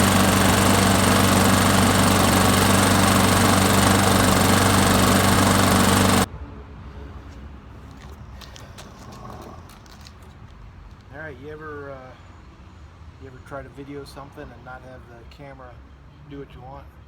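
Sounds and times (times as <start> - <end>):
lawnmower engine running: 0.0 - 6.3.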